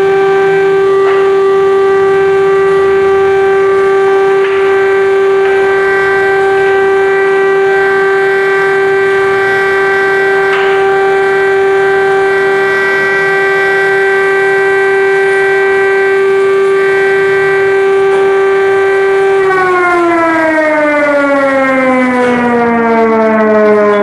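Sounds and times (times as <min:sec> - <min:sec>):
air-raid siren steady tone: 0:00.0 - 0:24.0.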